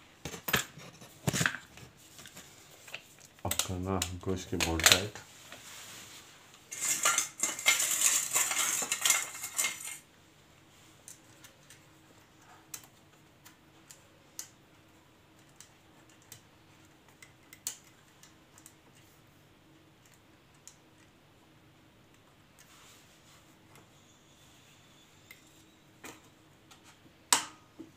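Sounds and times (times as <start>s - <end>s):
metal tools clinking: 6.7s - 10.0s.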